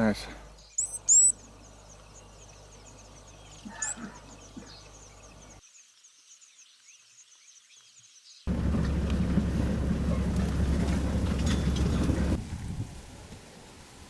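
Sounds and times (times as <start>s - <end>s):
birds chirping: 0.0s - 5.6s, 8.5s - 12.4s
loud bird call: 3.5s - 5.0s.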